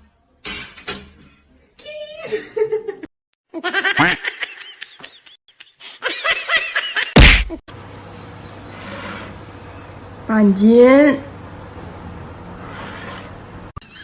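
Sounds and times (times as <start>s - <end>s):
high-pitched laughter: 3.5s - 7.2s
loud smack: 7.2s - 7.6s.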